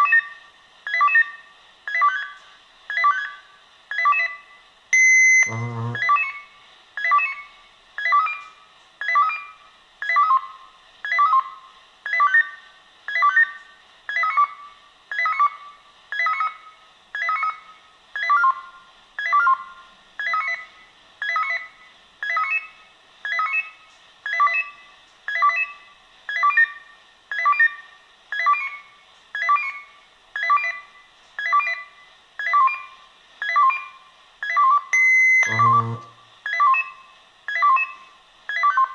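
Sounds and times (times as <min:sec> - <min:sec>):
pager electronic chirp: 0:05.0 - 0:06.2, 0:29.4 - 0:38.9.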